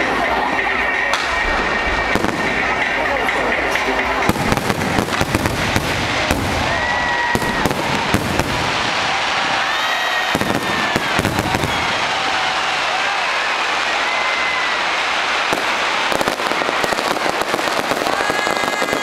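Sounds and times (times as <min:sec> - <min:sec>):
firework bangs and crackles: 0:00.0 - 0:19.0
firework whistles: 0:04.3 - 0:19.0.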